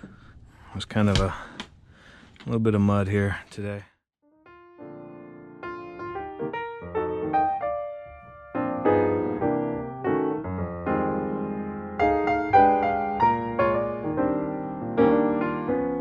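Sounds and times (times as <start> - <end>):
gentle piano melody: 4.2 - 16.0.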